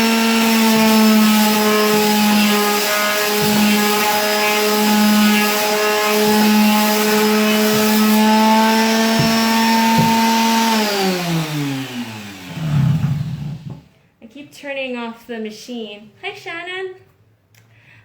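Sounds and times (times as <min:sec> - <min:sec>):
electric sander whining: 0:00.0 - 0:13.9.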